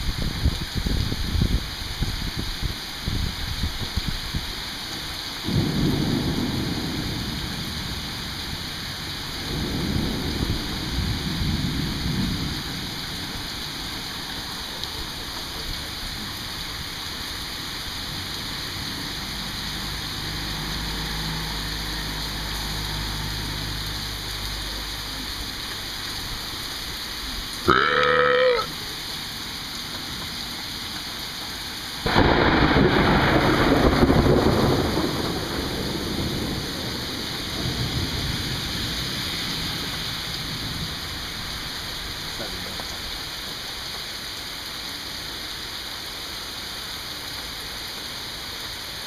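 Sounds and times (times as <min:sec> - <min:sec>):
steady rain: 0:00.0 - 0:49.0
thunder rumbling: 0:05.4 - 0:24.1, 0:32.0 - 0:42.3.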